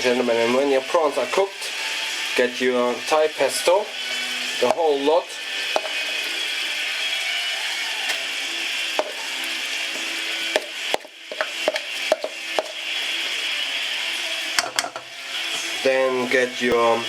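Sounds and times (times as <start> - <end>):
prawns sizzling in frying pan: 0.0 - 17.0
kitchen utensil clacking: 5.7 - 6.0, 14.6 - 15.1.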